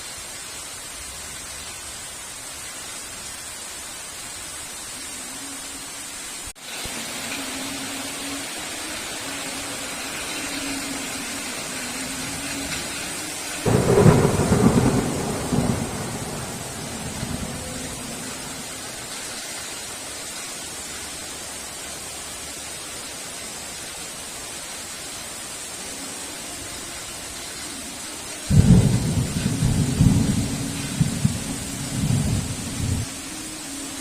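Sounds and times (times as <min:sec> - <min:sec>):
heavy rain: 0:00.0 - 0:34.0
thunderclap rumbling: 0:13.6 - 0:18.9, 0:28.5 - 0:33.1.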